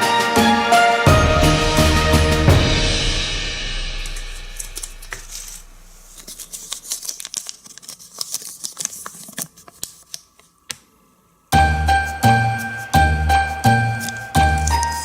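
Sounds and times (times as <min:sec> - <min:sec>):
background music: 0:00.0 - 0:06.1, 0:11.6 - 0:15.0
chocolate egg wrapper crackling: 0:06.3 - 0:10.3.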